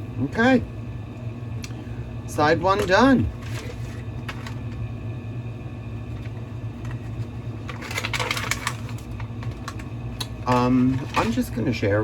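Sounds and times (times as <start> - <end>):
low background hum: 0.0 - 12.0
rustling handling noise: 2.6 - 4.9, 6.0 - 11.6.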